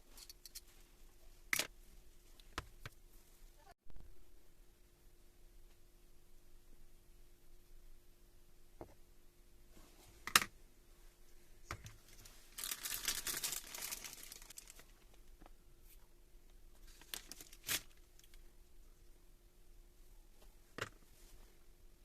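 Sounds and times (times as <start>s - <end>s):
rustling and crinkling: 11.7s - 16.1s, 16.7s - 18.4s.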